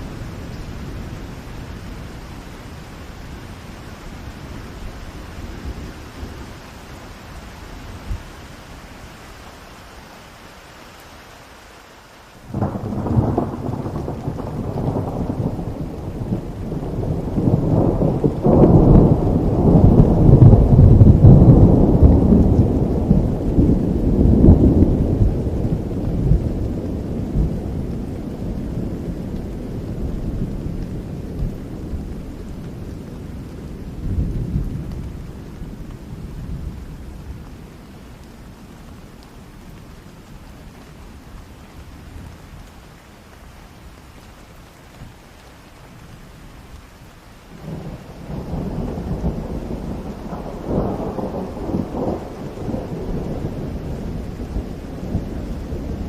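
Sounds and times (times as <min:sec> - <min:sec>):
steady rain: 0:00.0 - 0:56.0
thunder rumbling: 0:12.5 - 0:39.0, 0:47.5 - 0:56.0.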